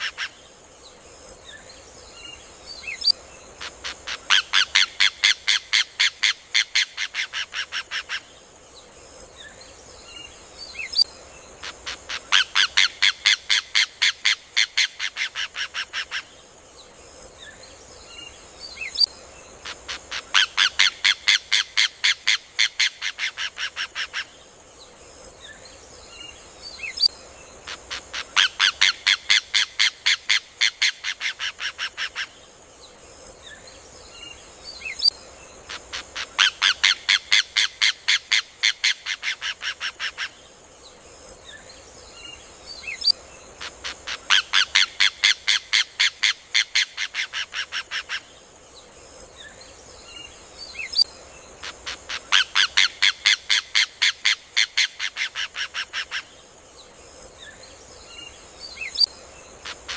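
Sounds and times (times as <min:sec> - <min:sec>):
faint chirps of other birds: 0:00.0 - 0:59.9
steady high hiss: 0:00.0 - 0:59.9.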